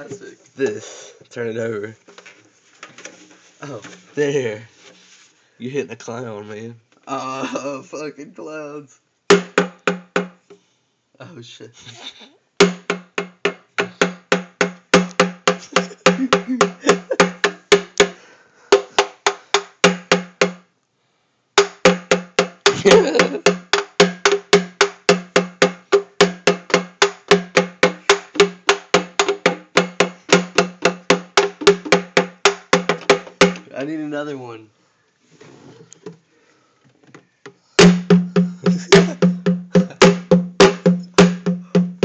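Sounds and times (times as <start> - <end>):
drum beaten in quick strokes: 37.8 - 42.0.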